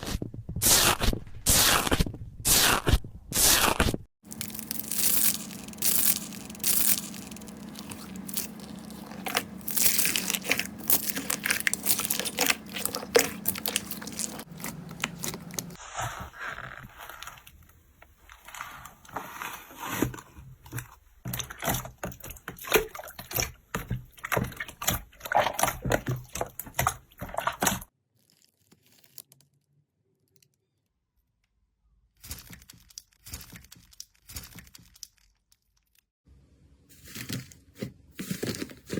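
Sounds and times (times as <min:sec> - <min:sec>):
slime crackling under hand: 0:04.3 - 0:15.8.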